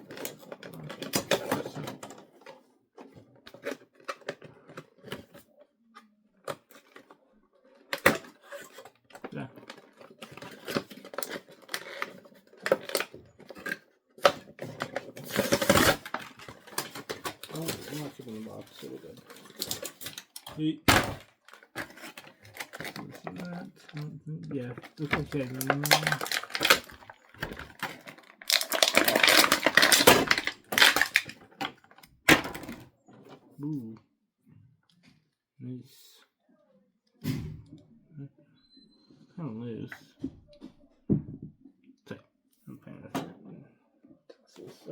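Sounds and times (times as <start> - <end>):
packaging rustling: 7.8 - 32.8
plastic packaging clicks and knocks: 7.8 - 32.9.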